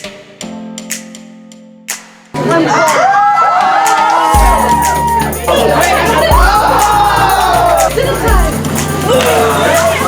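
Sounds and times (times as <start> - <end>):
sliding lead melody: 4.4 - 10.0.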